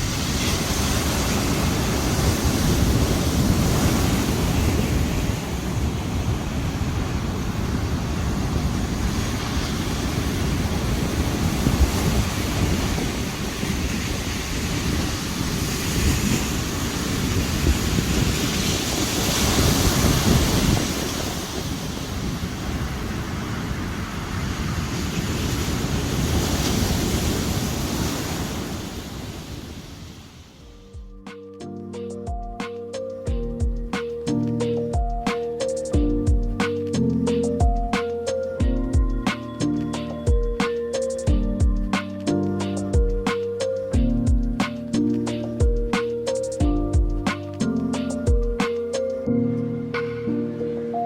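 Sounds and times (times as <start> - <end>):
waves breaking on beach: 0.0 - 30.7, 33.9 - 51.0
wind buffeting microphone: 0.0 - 30.9.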